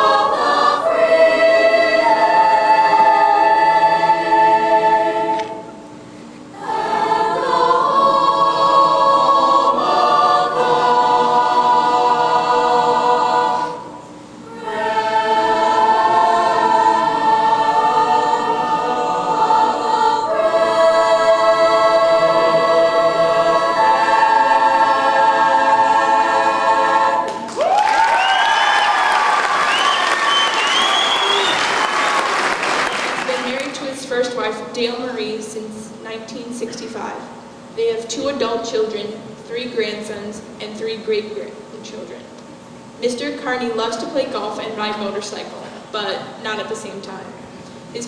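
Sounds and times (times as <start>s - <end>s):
choir singing unaccompanied: 0.0s - 5.7s, 6.5s - 33.5s
applause: 27.4s - 33.6s.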